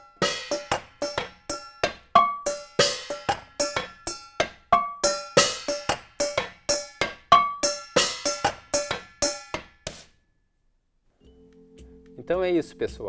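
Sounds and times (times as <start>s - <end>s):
metal objects struck ringing: 0.0s - 10.1s.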